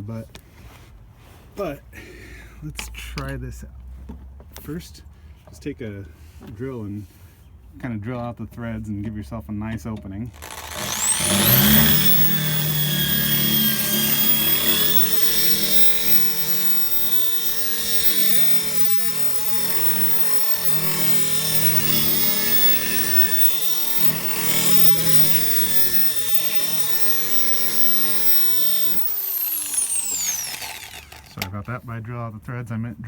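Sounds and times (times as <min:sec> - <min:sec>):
electric drill whining under load: 0:10.4 - 0:31.4.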